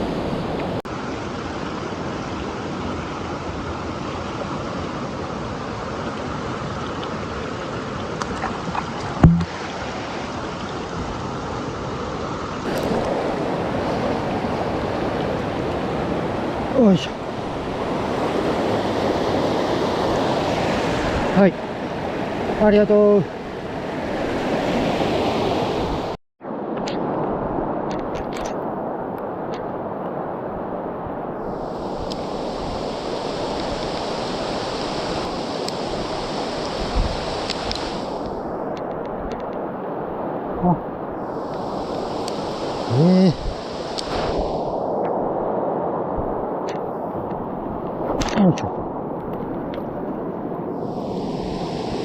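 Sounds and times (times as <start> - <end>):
stream rushing over rocks: 0.0 - 52.0
short low thump: 9.2 - 9.5.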